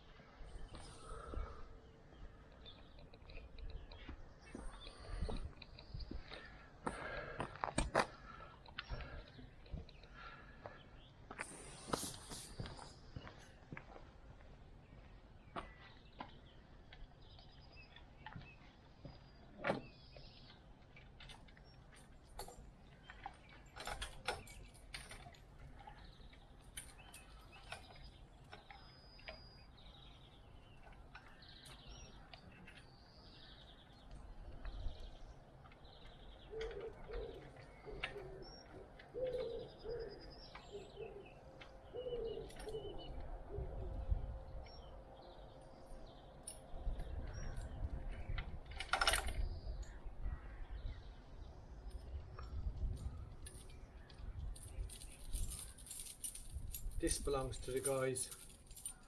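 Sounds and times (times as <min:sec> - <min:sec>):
birds chirping: 0:00.2 - 0:59.0
pigeon cooing: 0:36.5 - 0:41.3, 0:41.9 - 0:44.0.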